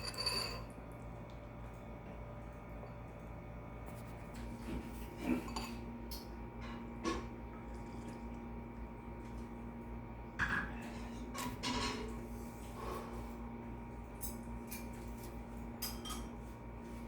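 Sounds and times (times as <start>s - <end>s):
cutlery clinking on a dish: 14.2s - 16.3s.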